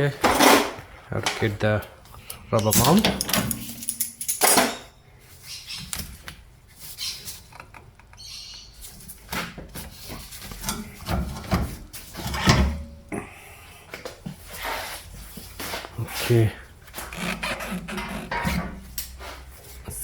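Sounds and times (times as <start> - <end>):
tools clicking and clunking: 0.2 - 5.0.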